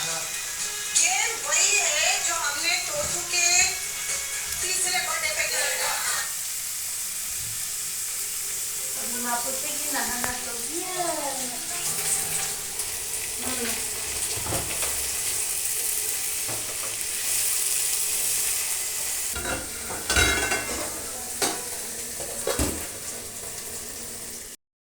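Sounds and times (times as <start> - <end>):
mushrooms sizzling in a pan: 0.0 - 24.6
spatula stirring and knocking on pan: 11.8 - 18.4, 19.0 - 23.7.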